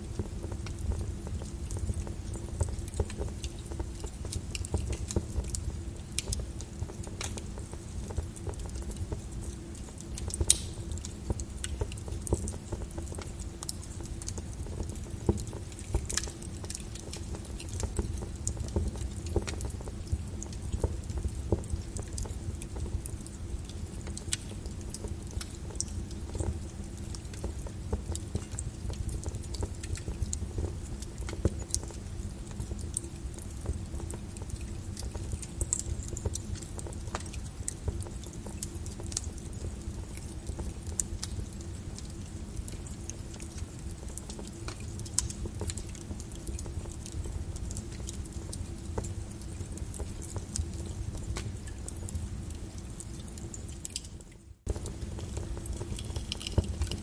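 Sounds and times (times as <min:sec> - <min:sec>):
steady rain: 0:00.0 - 0:57.0
wood fire crackling and popping: 0:00.0 - 0:57.0.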